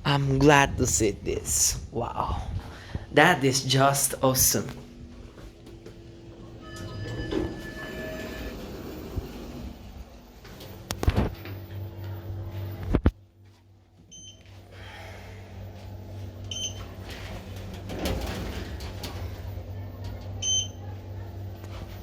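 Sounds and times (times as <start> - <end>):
elevator low hum: 0.0 - 22.0
elevator thumps: 4.7 - 11.4.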